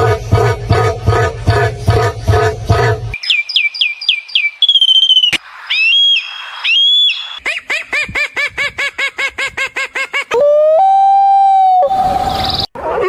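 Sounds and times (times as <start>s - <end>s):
steady high whistle: 1.9s - 7.4s
rising whistled notes: 2.4s - 7.4s, 10.8s - 12.7s.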